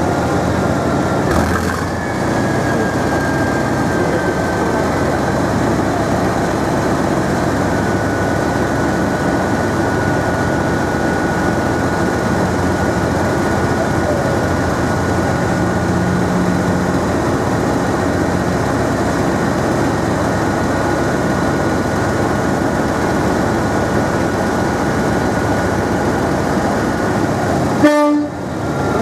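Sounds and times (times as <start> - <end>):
diesel locomotive engine running hard: 0.0 - 29.0
locomotive horn blast: 27.8 - 28.5.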